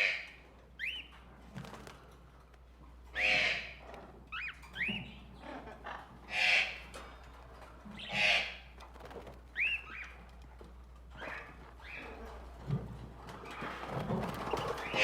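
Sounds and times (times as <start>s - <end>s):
harsh bird squawks: 3.2s - 3.8s, 6.3s - 6.8s, 8.0s - 8.6s.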